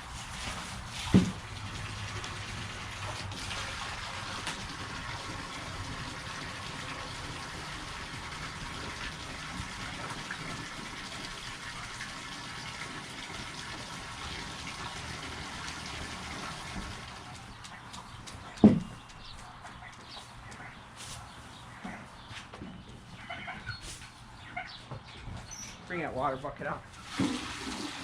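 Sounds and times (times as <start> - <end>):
water from hose filling bucket: 0.0 - 18.2, 26.8 - 28.0.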